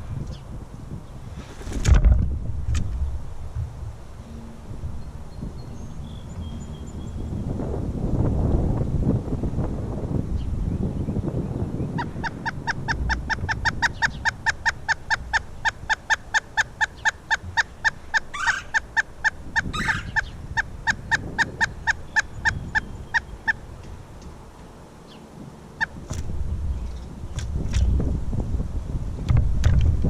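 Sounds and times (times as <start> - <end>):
woodpecker calling: 11.9 - 28.0.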